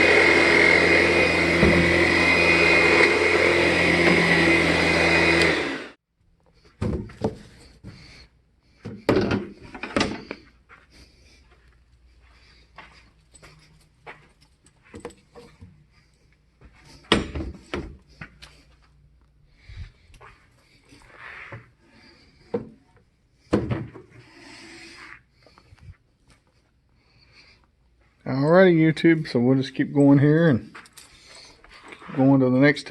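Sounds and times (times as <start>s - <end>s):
vacuum cleaner running: 0.0s - 6.0s.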